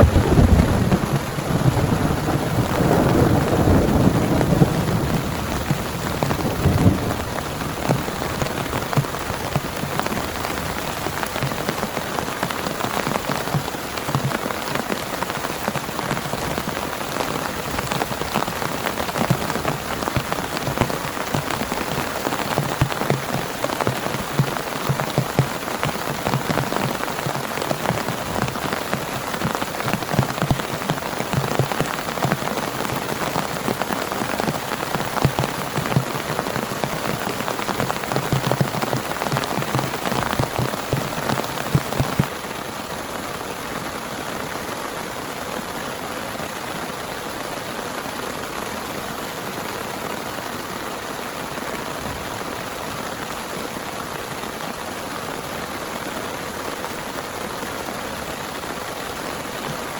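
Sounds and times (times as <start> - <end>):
low thunder rumble: 0.0 - 10.8
heavy rain pouring: 0.0 - 59.9.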